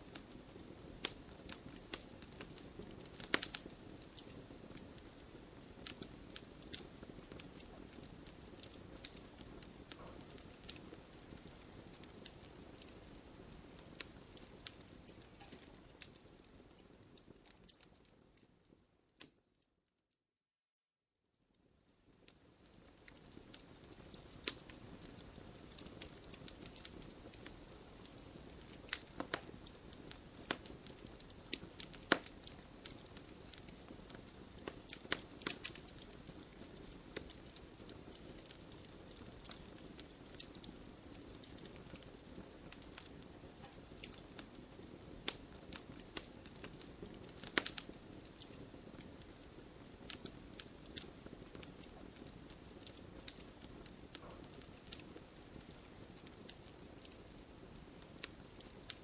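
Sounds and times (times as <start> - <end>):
fire popping and snapping: 0.0 - 19.4, 21.8 - 59.0
soft hiss: 0.0 - 19.5
wood fire crackling: 0.0 - 19.5, 21.5 - 59.0.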